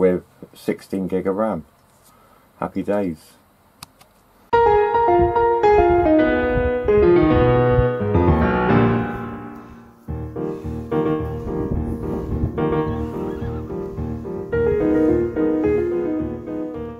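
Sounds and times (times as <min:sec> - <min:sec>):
piano music: 0:04.5 - 0:16.9.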